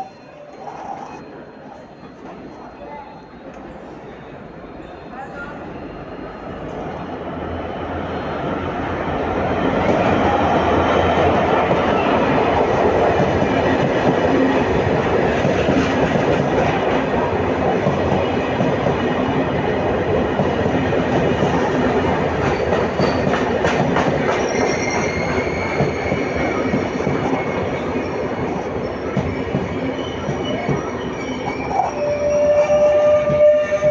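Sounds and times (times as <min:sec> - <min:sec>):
train wheels rumbling on rail: 0:05.4 - 0:33.9
high brake and wheel squeal: 0:24.4 - 0:33.8.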